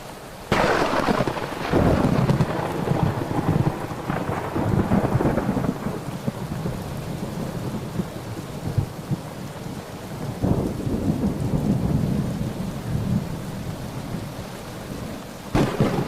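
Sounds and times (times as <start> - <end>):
steady rain: 0.0 - 16.0
thunder rolling: 0.5 - 9.3, 10.4 - 13.4, 15.5 - 16.0.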